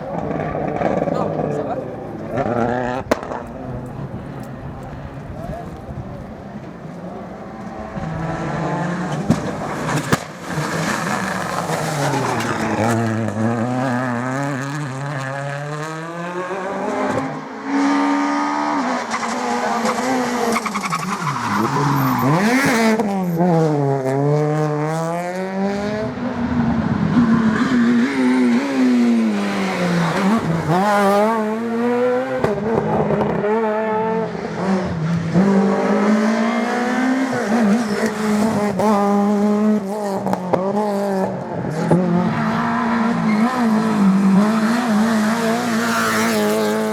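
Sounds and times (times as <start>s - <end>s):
rally car engines revving: 0.0s - 46.9s
tyres squealing and skidding: 16.9s - 23.6s, 36.3s - 39.0s, 42.2s - 46.5s.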